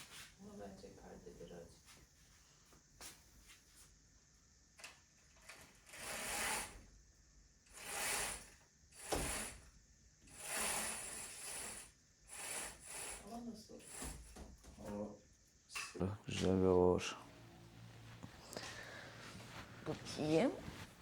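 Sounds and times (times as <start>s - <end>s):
curtains swishing along rail: 5.5s - 6.8s, 7.7s - 9.6s, 10.3s - 14.4s, 17.4s - 21.0s.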